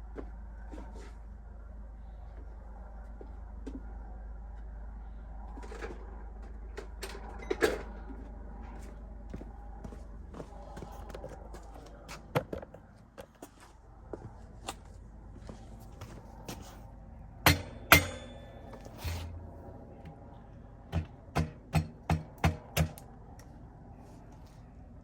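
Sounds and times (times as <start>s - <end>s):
mallet tapping metal axle: 17.5s - 19.3s.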